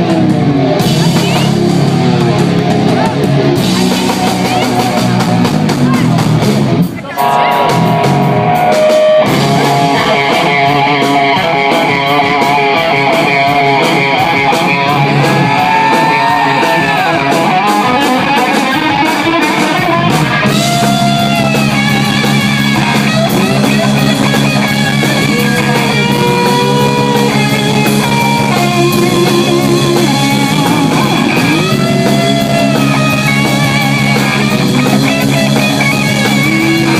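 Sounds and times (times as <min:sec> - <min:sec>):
drums and bass: 0:00.0 - 0:36.9
electric guitar bending notes: 0:00.0 - 0:36.9.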